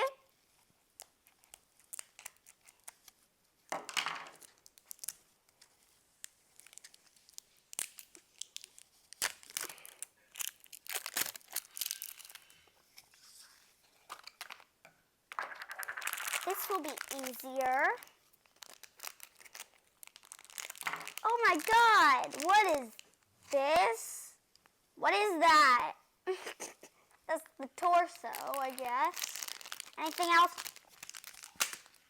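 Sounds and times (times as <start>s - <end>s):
packaging torn and crinkled: 1.0s - 3.2s, 4.3s - 12.6s, 15.7s - 23.2s, 27.9s - 32.0s.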